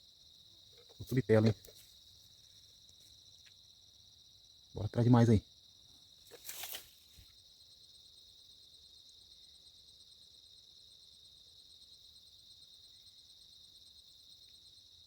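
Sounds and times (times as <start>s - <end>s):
crickets and night insects chirping: 0.0s - 15.0s
rustling noise: 6.3s - 7.3s.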